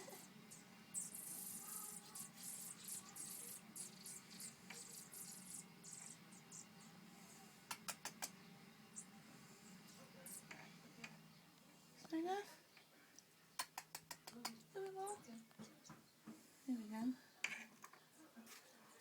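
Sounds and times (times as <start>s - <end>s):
nestlings begging cheeps: 0.0s - 11.5s
sharp clicks: 7.7s - 8.4s, 13.6s - 14.6s.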